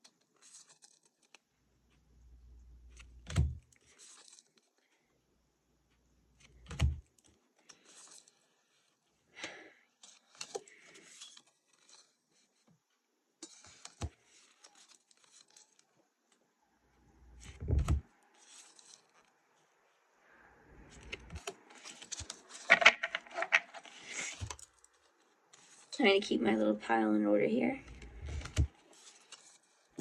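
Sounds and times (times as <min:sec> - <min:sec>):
cards clicking and rustling: 0:00.1 - 0:01.4, 0:02.9 - 0:04.8, 0:06.4 - 0:12.6, 0:13.4 - 0:15.9, 0:17.4 - 0:19.3, 0:20.9 - 0:26.0, 0:27.8 - 0:30.0.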